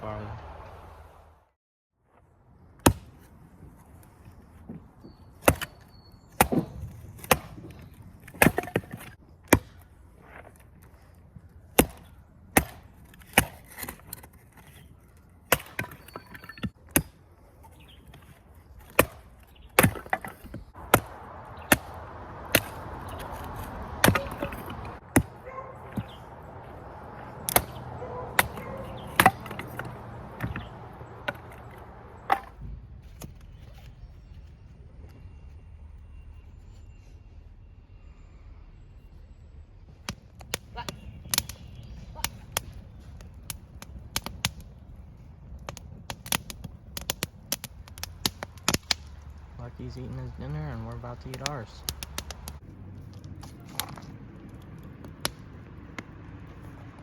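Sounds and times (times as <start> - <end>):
sharp chopping strikes: 2.8 - 3.2, 6.4 - 7.7, 11.8 - 13.9, 20.8 - 25.4, 27.5 - 30.7.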